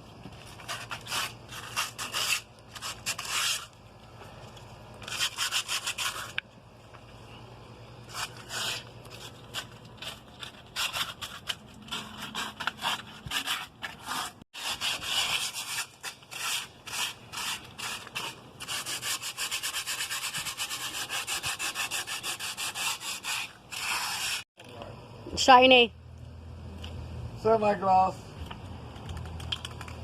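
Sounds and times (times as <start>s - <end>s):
hand sanding strokes: 5.0s - 6.4s, 10.8s - 24.4s.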